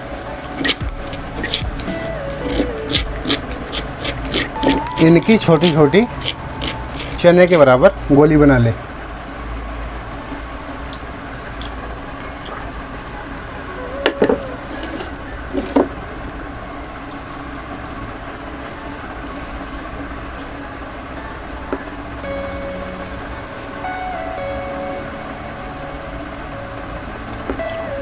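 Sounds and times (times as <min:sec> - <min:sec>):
steady musical tone: 0:00.0 - 0:08.5, 0:11.8 - 0:16.5, 0:21.4 - 0:28.0
low background hum: 0:00.0 - 0:28.0.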